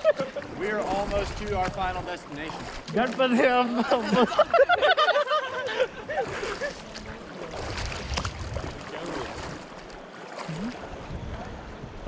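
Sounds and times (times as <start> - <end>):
river water rushing and splashing: 0.0 - 4.3, 6.0 - 12.0
wind buffeting microphone: 0.5 - 2.8, 6.0 - 9.8, 10.5 - 12.0.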